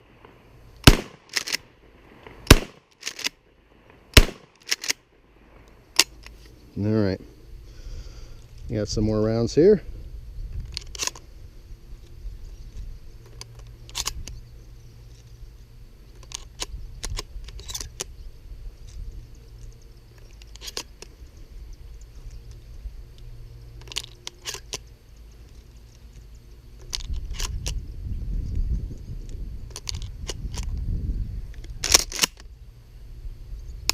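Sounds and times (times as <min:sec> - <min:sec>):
shotgun shells clicking into magazine: 0:01.2 - 0:01.6, 0:03.0 - 0:03.3, 0:04.6 - 0:05.0, 0:10.6 - 0:11.2, 0:23.8 - 0:24.9, 0:29.7 - 0:30.8, 0:31.6 - 0:32.5.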